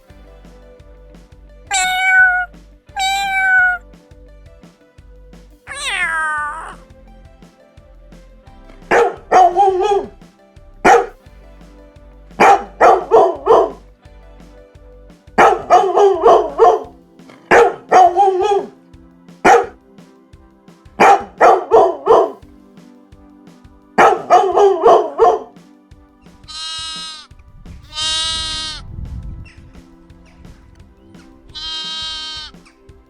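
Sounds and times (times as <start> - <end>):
faint background music: 0.0 - 33.0
dog barking: 10.9 - 11.1, 17.5 - 18.7, 19.5 - 19.7.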